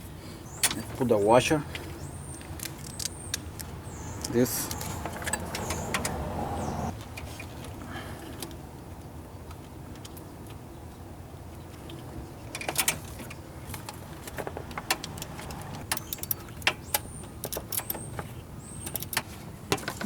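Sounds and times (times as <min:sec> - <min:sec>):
metallic clicks of tools: 0:14.9 - 0:18.0.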